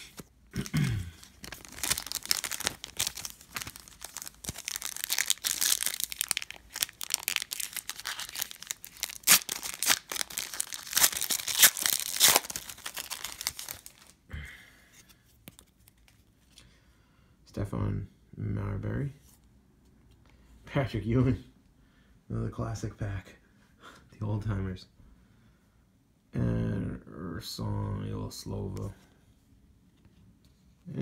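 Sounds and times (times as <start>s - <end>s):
wrapper ripping and crackling: 0.0s - 14.2s.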